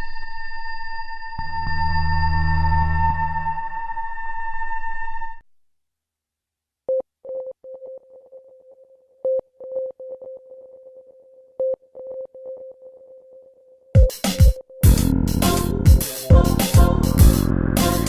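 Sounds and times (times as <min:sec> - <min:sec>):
electronic background music: 0:07.3 - 0:18.0
rhythmic clicks: 0:14.0 - 0:18.0
steady held tone: 0:14.8 - 0:18.0.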